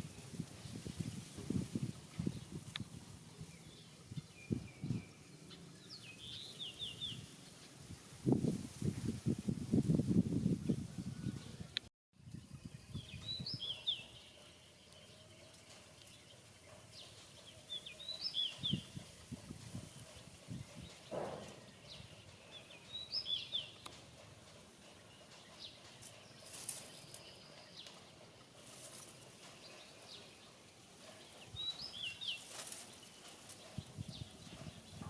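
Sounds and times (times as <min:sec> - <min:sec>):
outdoor background noise: 0:00.0 - 0:35.0
bird chirping: 0:02.2 - 0:07.7, 0:11.1 - 0:35.0
low knocks: 0:21.1 - 0:21.7.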